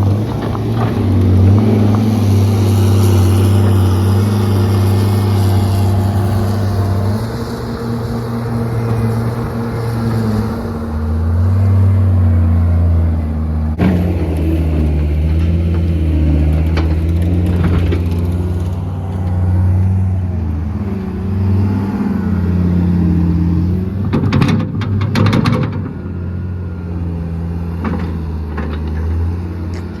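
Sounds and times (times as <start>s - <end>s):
engine running: 0.0s - 30.0s
clattering knocks: 24.0s - 26.1s.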